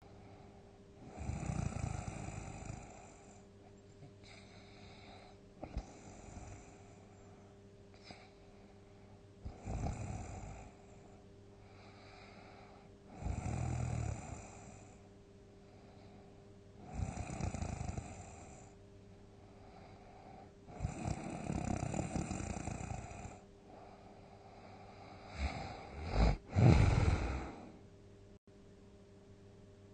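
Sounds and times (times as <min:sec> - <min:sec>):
soft breaths: 0:00.0 - 0:01.2, 0:02.7 - 0:09.6, 0:10.6 - 0:13.2, 0:14.4 - 0:16.6, 0:18.1 - 0:27.8
faint steady hum: 0:00.0 - 0:29.9
person snoring heavily: 0:01.0 - 0:03.3, 0:09.5 - 0:10.8, 0:11.8 - 0:15.0, 0:16.8 - 0:18.7, 0:20.7 - 0:23.9, 0:24.5 - 0:27.8.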